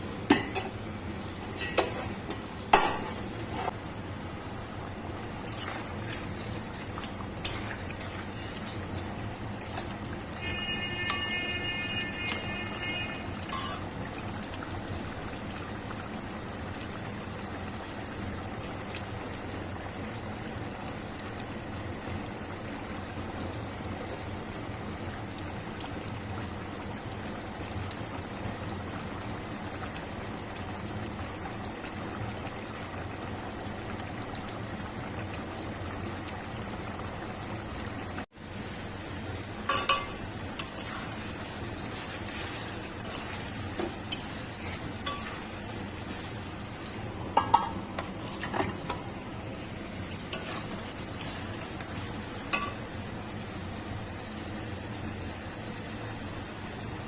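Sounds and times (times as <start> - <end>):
curry bubbling and sizzling in pot: 0.0 - 57.0
utensil clinking against pot: 47.4 - 49.0.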